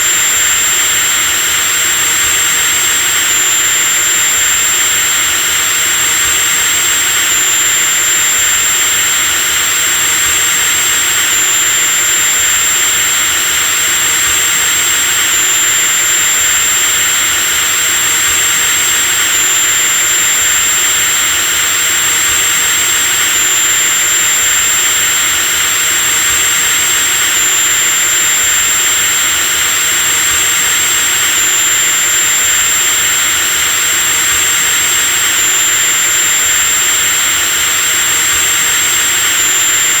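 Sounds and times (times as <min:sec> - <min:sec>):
power drill whining: 0:00.0 - 0:40.0.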